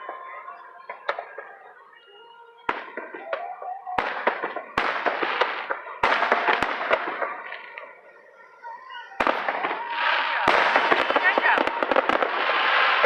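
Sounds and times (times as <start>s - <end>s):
firework crackling: 0.0s - 13.0s
firework bangs: 2.7s - 8.0s, 9.2s - 13.0s.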